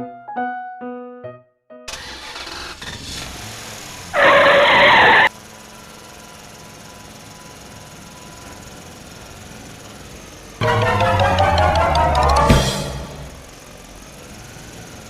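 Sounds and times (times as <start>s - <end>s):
piano music: 0.0s - 1.9s, 10.6s - 13.5s
loud engine burst: 1.9s - 5.3s.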